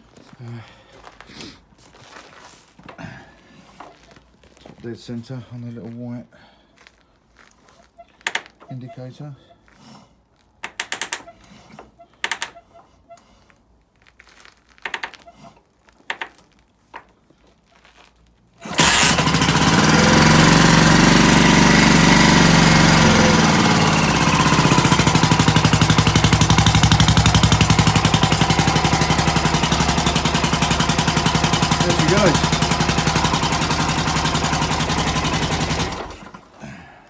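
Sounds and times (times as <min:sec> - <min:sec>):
mechanical clicks and clunks: 0:10.6 - 0:12.6
engine starting and idling: 0:18.6 - 0:36.6.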